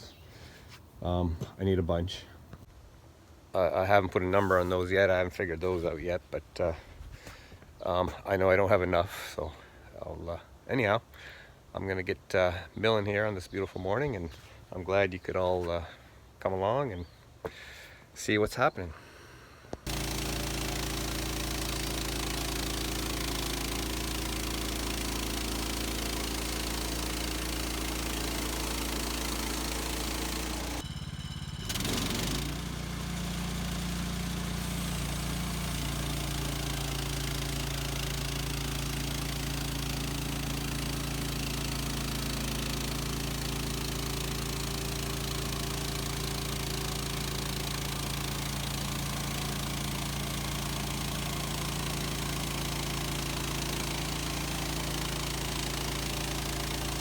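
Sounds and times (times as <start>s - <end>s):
sawmill gas engine running: 19.8s - 57.0s.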